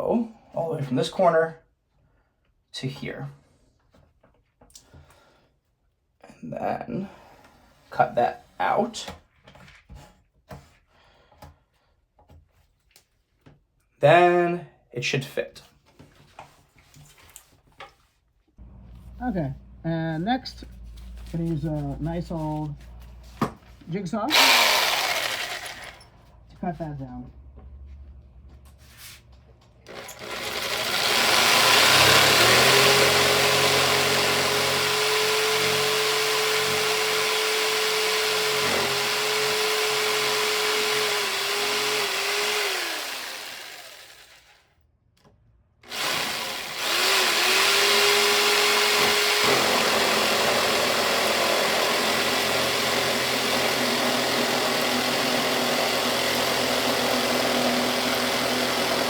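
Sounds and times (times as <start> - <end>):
jigsaw cutting wood: 24.3 - 26.1, 29.8 - 44.6, 45.8 - 59.0.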